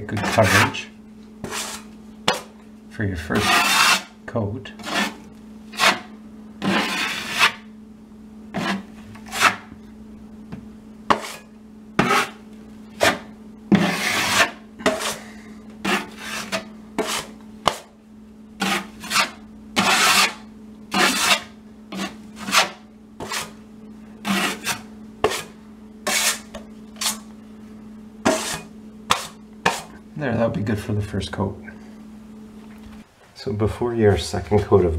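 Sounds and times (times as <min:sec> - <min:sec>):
drywall knife scraping compound: 0:00.0 - 0:02.5, 0:03.2 - 0:07.7, 0:08.5 - 0:09.7, 0:11.1 - 0:17.9, 0:18.6 - 0:23.6, 0:24.2 - 0:27.3, 0:28.2 - 0:30.0
steady low hum: 0:00.0 - 0:34.9.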